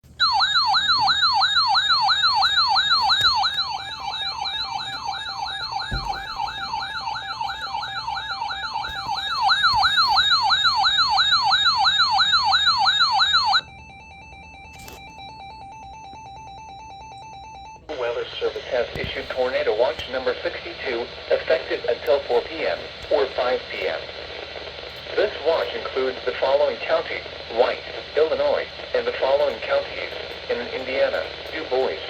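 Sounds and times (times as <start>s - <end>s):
electronic siren alarm wailing: 0.1s - 17.9s.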